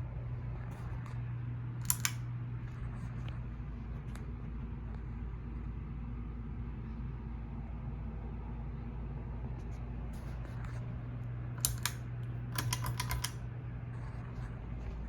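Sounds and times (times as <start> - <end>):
ceiling fan motor humming: 0.0 - 15.0
sharp clicks: 1.8 - 2.2, 11.6 - 12.0, 12.6 - 13.4
light clicks: 1.8 - 2.3, 11.6 - 12.0.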